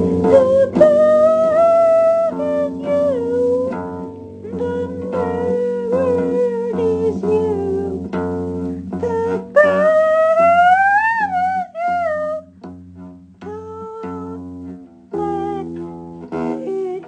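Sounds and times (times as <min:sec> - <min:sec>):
bass guitar: 0:00.0 - 0:17.0
plucked guitar: 0:00.0 - 0:17.0
wordless melodic line: 0:00.0 - 0:17.0.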